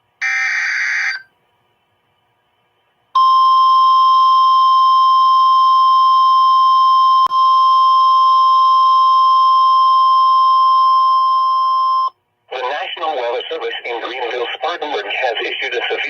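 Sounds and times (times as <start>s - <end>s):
steady electronic alarm tone: 0.2s - 1.2s.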